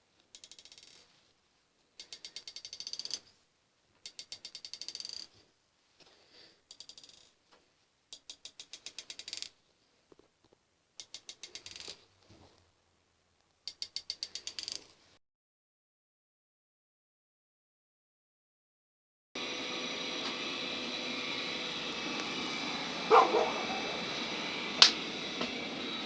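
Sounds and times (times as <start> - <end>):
ratchet clicking: 0.2 - 1.1, 2.0 - 3.4, 4.0 - 5.4, 6.6 - 7.4, 8.1 - 9.6, 11.0 - 12.0, 13.6 - 15.0.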